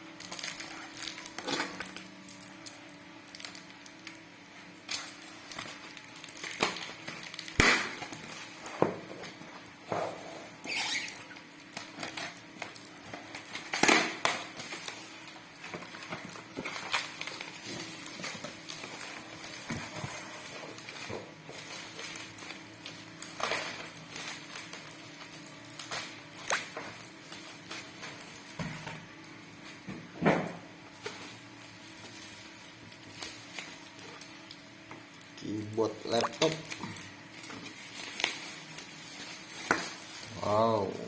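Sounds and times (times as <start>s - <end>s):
packaging rustling and clicking: 10.6s - 29.8s.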